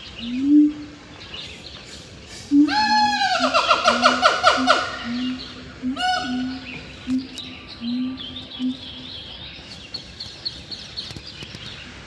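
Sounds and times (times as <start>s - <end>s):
low hoots: 0.0s - 9.4s
loud primate calls: 1.4s - 9.0s.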